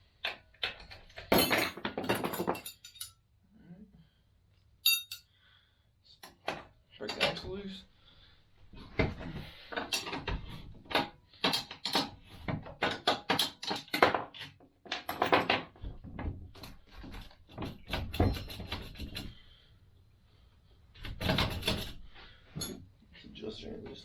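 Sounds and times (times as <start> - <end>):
hand tools clicking and clunking: 0.2 - 3.1, 4.8 - 5.2, 6.2 - 7.5, 8.9 - 19.5, 21.0 - 22.9.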